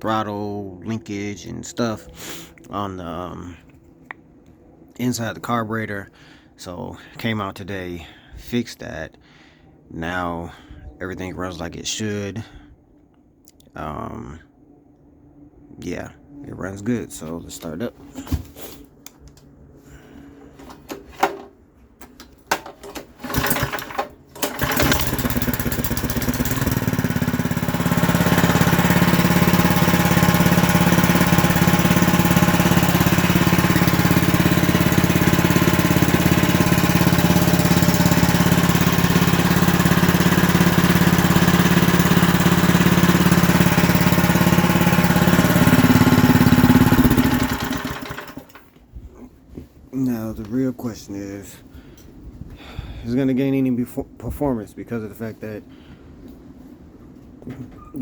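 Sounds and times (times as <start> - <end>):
starter cord pulls: 20.6 - 48.7
small engine running: 23.2 - 48.6.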